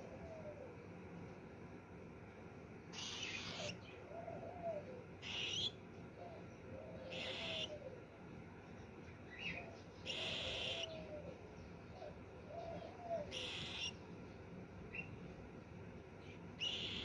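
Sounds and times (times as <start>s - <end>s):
bird cooing: 0.0s - 0.9s, 3.0s - 8.1s, 9.3s - 14.0s, 16.6s - 17.0s.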